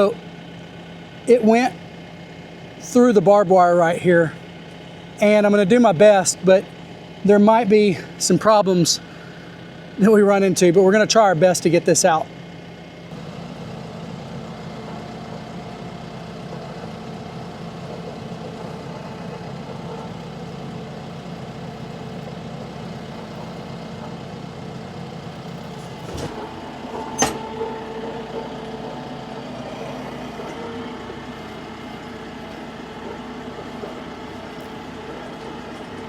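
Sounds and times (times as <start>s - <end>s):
tractor engine running: 0.0s - 36.0s
sharp metallic clanks: 25.6s - 27.7s.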